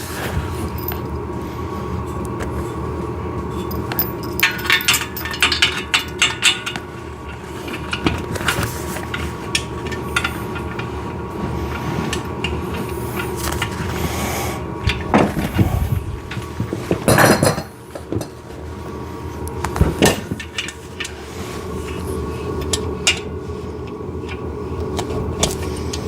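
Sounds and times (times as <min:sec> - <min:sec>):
steel parts clinking and knocking: 0:03.5 - 0:10.9.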